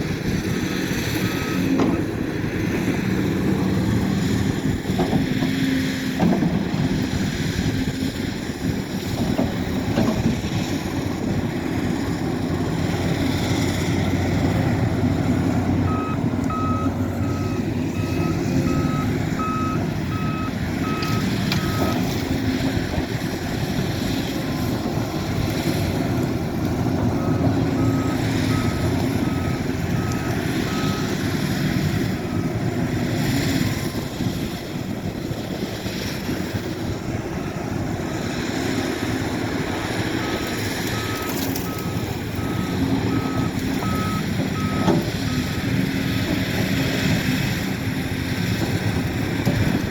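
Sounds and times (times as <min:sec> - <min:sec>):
diesel engine running: 0:00.0 - 0:49.9
reversing alarm beeping: 0:01.2 - 0:02.2, 0:15.8 - 0:22.0, 0:27.2 - 0:31.2, 0:40.2 - 0:45.7.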